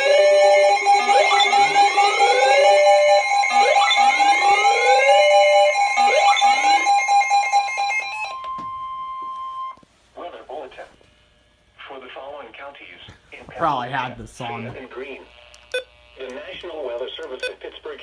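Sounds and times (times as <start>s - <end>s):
siren whoop sweeping upward: 0.0s - 9.7s
steady alarm tones: 0.0s - 9.8s
steady electronic tone: 0.0s - 9.8s.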